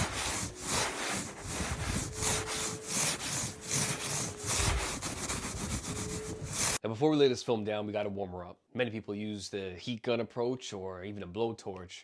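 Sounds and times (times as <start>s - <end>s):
brushing snow off glass: 0.0s - 6.8s.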